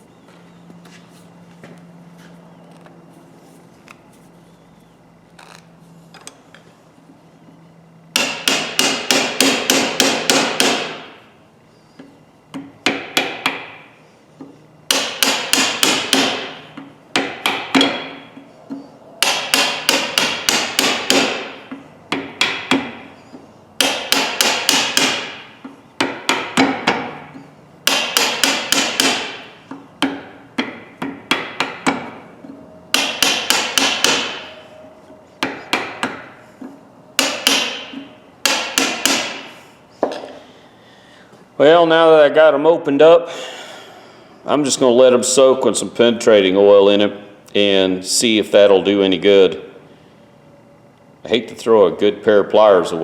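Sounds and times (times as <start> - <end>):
hammer striking steel pliers: 19.2 - 21.5, 23.8 - 25.4, 32.9 - 34.6, 37.2 - 40.3.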